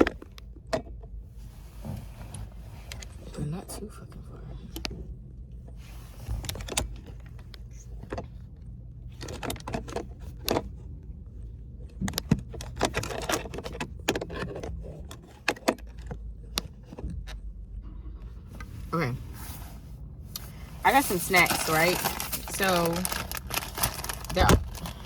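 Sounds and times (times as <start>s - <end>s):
low steady hum: 0.0s - 25.0s
objects clicking and rattling: 21.0s - 25.0s.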